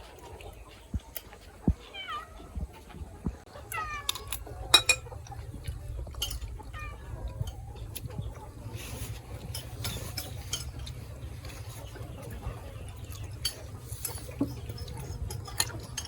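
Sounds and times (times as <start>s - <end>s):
kitchenware knocking and clinking: 4.7s - 5.2s.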